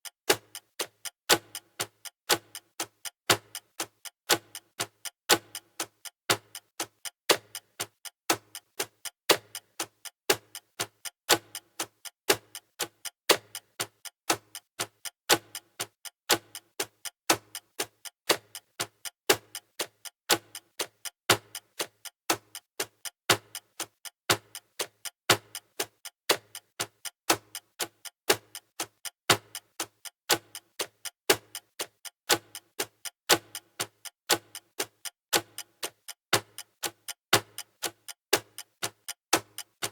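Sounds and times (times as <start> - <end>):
clock ticking: 0.0 - 39.9.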